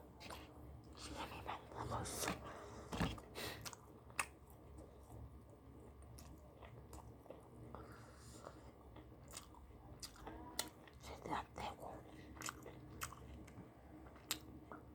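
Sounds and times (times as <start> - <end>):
person chewing and crunching food: 3.0 - 5.2, 6.0 - 14.9.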